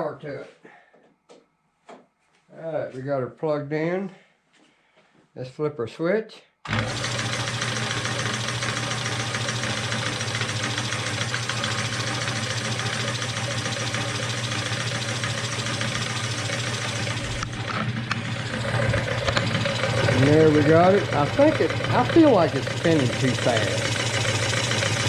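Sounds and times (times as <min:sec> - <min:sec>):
electric motor humming: 0:06.7 - 0:25.0.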